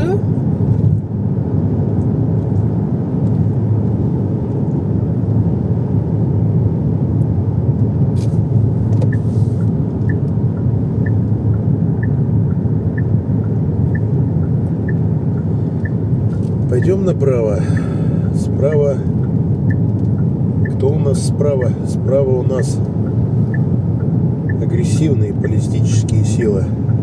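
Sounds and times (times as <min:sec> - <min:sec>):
car road and engine rumble: 0:00.0 - 0:27.0
turn signal ticking: 0:08.8 - 0:27.0.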